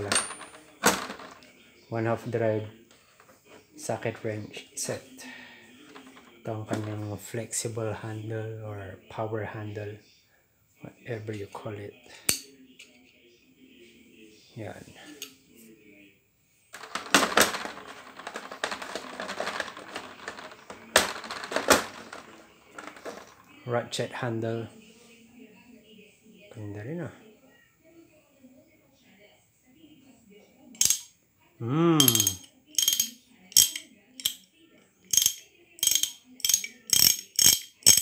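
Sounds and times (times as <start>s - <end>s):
metal tools clattering in plastic case: 0.0s - 1.4s, 16.8s - 23.5s.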